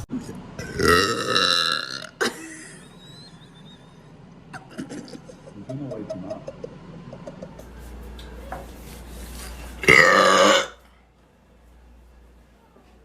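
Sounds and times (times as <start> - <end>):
girl burping: 0.6 - 2.5, 9.8 - 10.8.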